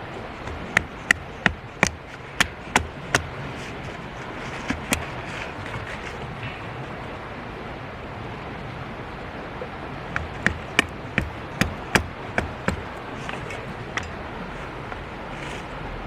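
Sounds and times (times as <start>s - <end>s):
sharp knocks: 0.0s - 6.6s, 10.1s - 15.6s.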